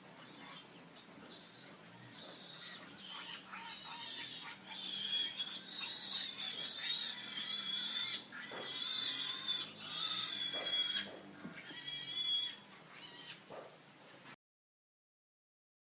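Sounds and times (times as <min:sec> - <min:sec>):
pigs squealing: 0:00.0 - 0:13.6.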